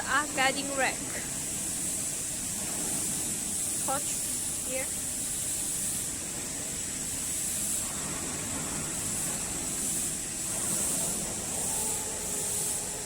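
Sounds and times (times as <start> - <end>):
factory hiss: 0.0 - 13.0.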